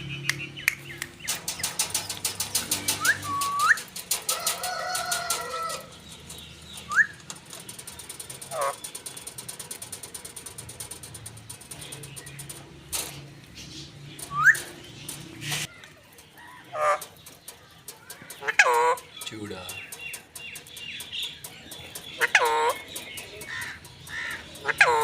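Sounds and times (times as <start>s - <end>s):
rapid clicks: 0.3s - 25.0s
parrot whistling and calling: 2.9s - 3.8s.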